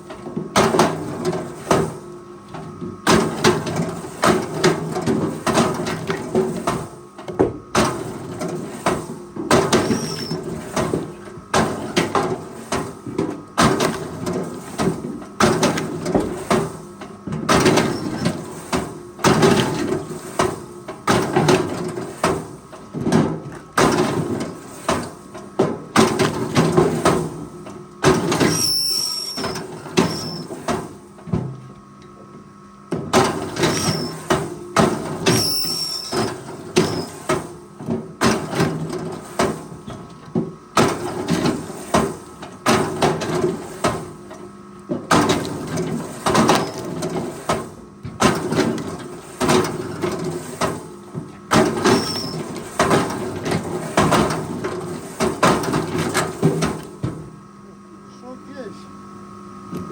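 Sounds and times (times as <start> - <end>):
clunks of metal and wood: 2.5 - 32.2, 32.9 - 57.3
short high squeaks: 9.8 - 10.4, 28.5 - 30.5, 33.7 - 34.2, 35.3 - 37.2, 51.9 - 52.4.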